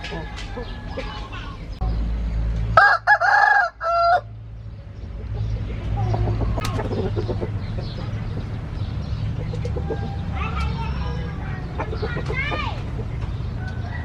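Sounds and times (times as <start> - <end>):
rooster crowing: 0.0 - 1.7, 2.8 - 4.4, 13.5 - 14.0.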